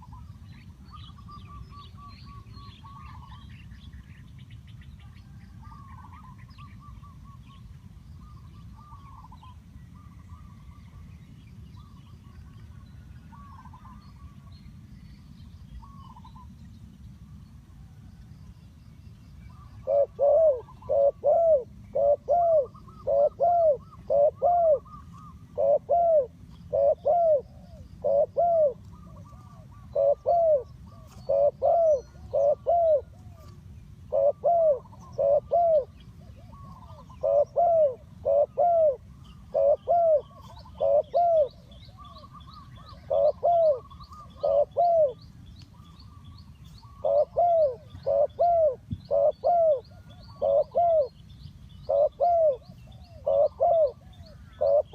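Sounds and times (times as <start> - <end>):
small birds chirping: 18.7 - 54.9
dove cooing: 19.6 - 45.2, 46.8 - 51.2, 51.8 - 54.9.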